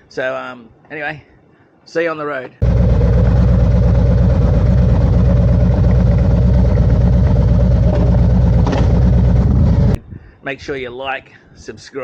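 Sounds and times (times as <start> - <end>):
motorcycle engine running loudly: 2.6 - 10.0.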